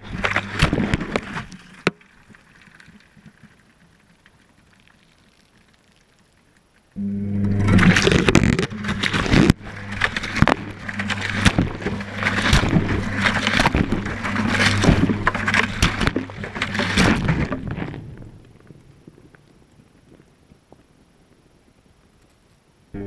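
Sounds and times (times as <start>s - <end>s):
washing machine motor humming: 0.0s - 1.3s, 7.0s - 18.0s
laundry tumbling in drum: 0.0s - 2.4s, 7.5s - 18.7s.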